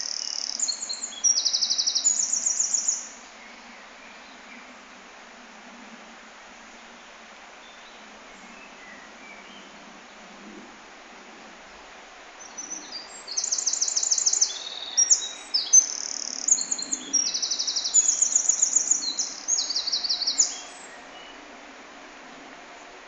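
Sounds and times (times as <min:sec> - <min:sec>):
songbird singing trills: 0:00.0 - 0:04.6, 0:12.4 - 0:21.4
steady background hiss: 0:00.0 - 0:23.0.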